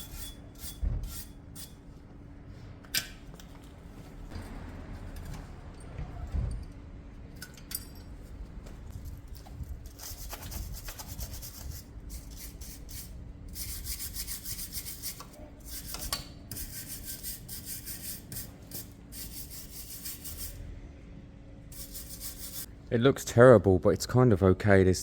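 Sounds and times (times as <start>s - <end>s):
hand scrubbing metal: 10.0s - 20.6s, 21.7s - 22.7s.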